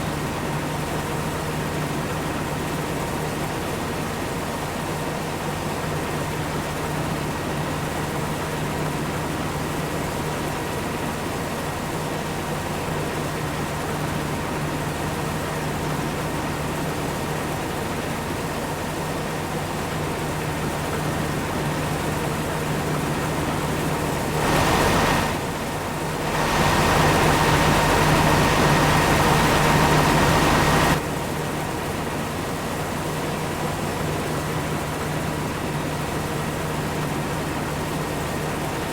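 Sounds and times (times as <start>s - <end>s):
machinery engine drone: 23.3s - 31.0s
loud rushing noise: 24.4s - 25.6s, 26.2s - 31.0s.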